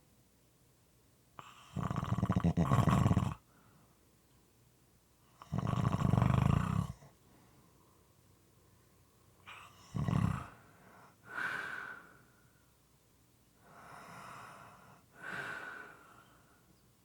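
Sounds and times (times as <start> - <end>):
loud snort: 1.7 - 3.4, 5.4 - 7.0, 9.8 - 10.6
person snoring: 1.7 - 3.4, 5.4 - 7.0, 9.5 - 10.6.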